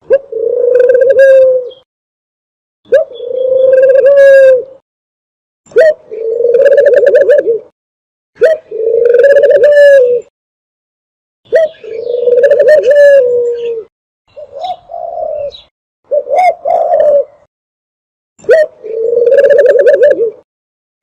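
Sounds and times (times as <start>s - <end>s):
dove cooing: 0.1s - 1.9s, 2.9s - 4.8s, 5.8s - 7.7s, 8.4s - 10.3s, 11.5s - 17.5s, 18.4s - 20.5s.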